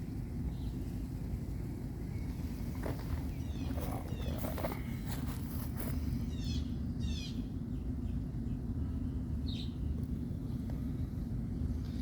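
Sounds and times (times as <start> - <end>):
steady low rumble: 0.0 - 12.0
birds chirping: 0.4 - 12.0
clicks and rustles: 2.7 - 6.0.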